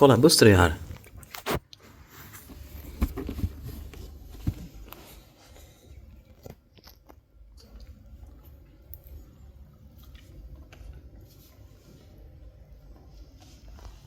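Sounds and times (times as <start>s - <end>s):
cats rustling in a basket: 0.5s - 6.6s.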